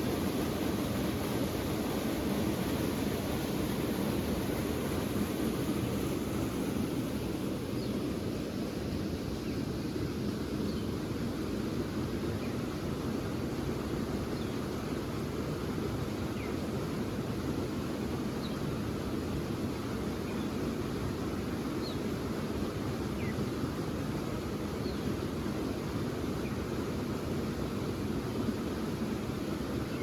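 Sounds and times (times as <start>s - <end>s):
river water rushing: 0.0s - 9.4s.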